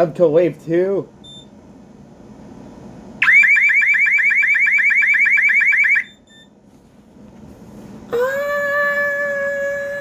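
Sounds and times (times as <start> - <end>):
alarm siren yelping warble: 3.2 - 6.2.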